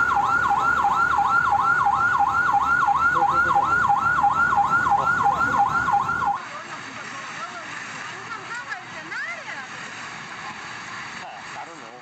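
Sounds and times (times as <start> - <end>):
emergency siren yelping: 0.0 - 6.4.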